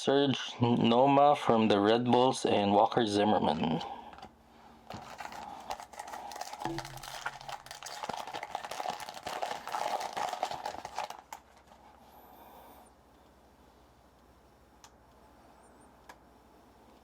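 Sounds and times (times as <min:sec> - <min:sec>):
foil wrapper crinkling: 0:04.8 - 0:12.0.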